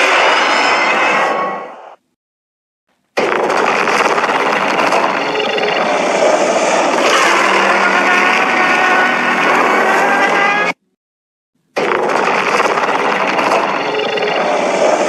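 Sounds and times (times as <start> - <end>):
harsh gritty droning sound: 3.2 - 11.0, 11.8 - 15.0.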